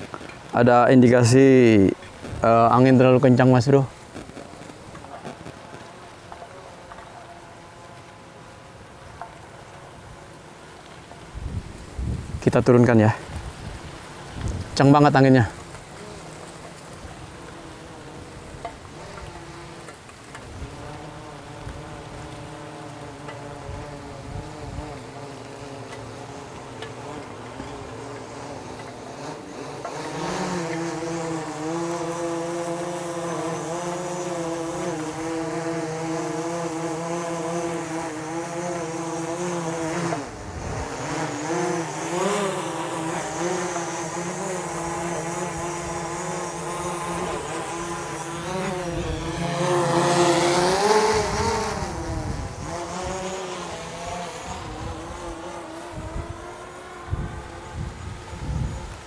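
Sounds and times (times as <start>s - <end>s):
drone propellers whining: 15.1s - 59.0s.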